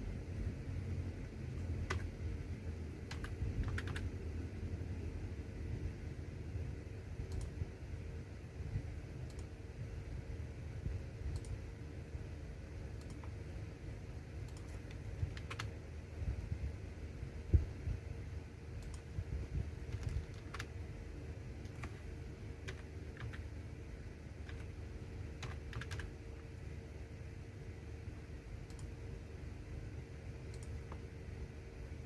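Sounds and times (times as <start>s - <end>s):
keyboard keystroke clicks: 1.5s - 2.1s, 3.1s - 4.1s, 7.3s - 7.6s, 11.3s - 11.6s, 13.0s - 13.4s, 14.4s - 15.7s, 18.8s - 19.1s, 19.9s - 20.7s, 21.6s - 23.5s, 24.4s - 24.7s, 25.4s - 26.1s, 30.5s - 31.1s.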